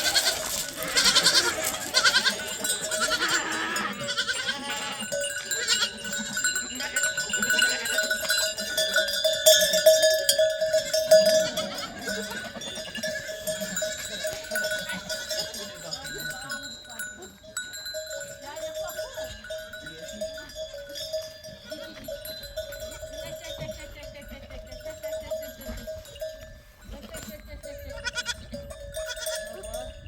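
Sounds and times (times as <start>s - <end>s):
animals bleating: 0.0s - 8.8s, 11.1s - 17.2s, 21.8s - 25.8s, 27.1s - 29.7s
livestock bells ringing: 0.0s - 30.0s.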